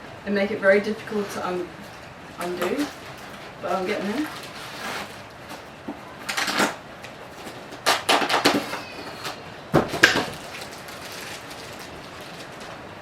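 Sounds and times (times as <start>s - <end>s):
plastic packaging crinkling: 1.9s - 13.0s
faint squeak: 8.6s - 9.6s.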